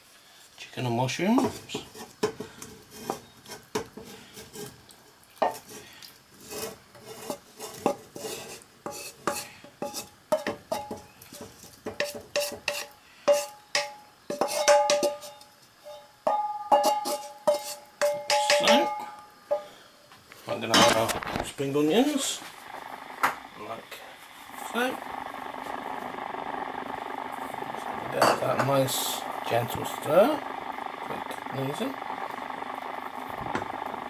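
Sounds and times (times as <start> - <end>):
spoon scraping in a saucepan: 1.4 - 4.8, 5.4 - 16.1, 16.7 - 18.9.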